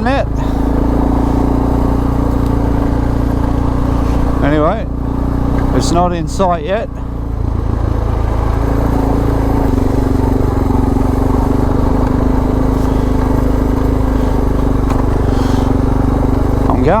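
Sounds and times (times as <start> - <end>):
motorcycle engine running: 0.0 - 17.0.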